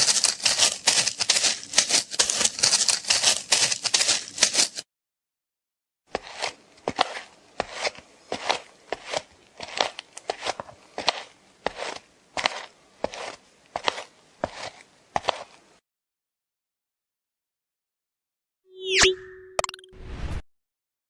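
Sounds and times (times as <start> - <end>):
footsteps scuffing: 0.0 - 4.8, 6.1 - 15.6.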